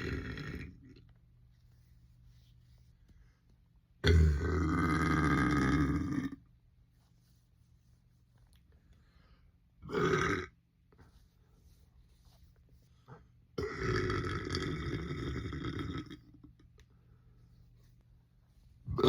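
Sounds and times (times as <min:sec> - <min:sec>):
person burping: 0:00.0 - 0:01.0, 0:04.0 - 0:06.4, 0:09.8 - 0:10.6, 0:13.6 - 0:16.5.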